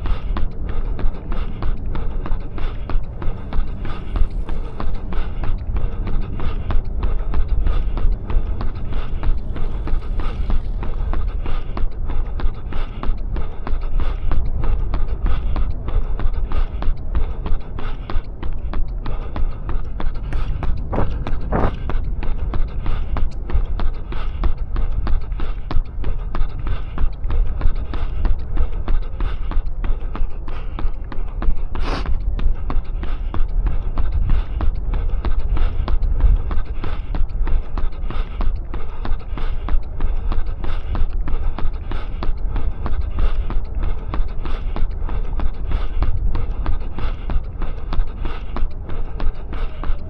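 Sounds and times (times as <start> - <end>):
low rumble: 0.0 - 50.0
runner's footfalls: 20.3 - 21.8.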